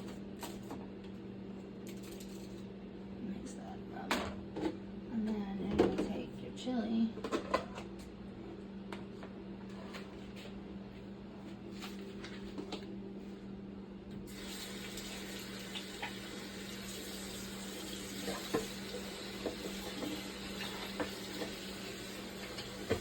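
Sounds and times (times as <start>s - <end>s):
steady low hum: 0.0s - 14.3s
tap water running into sink: 14.3s - 23.0s.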